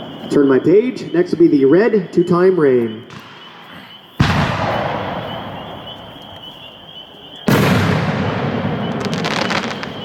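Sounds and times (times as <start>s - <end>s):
firework booms with echo: 3.1s - 6.3s, 7.5s - 10.0s.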